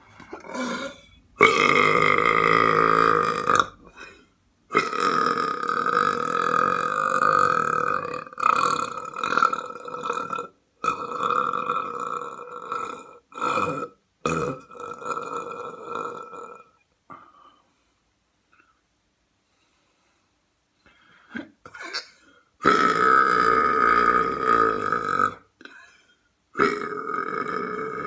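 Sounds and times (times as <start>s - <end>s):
person belching: 0.2s - 4.0s, 4.7s - 17.2s, 21.4s - 25.9s, 26.6s - 28.0s.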